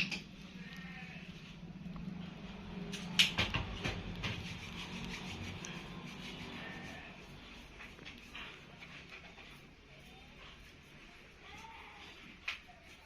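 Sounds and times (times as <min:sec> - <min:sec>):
rubbing and scraping: 0:02.6 - 0:13.0.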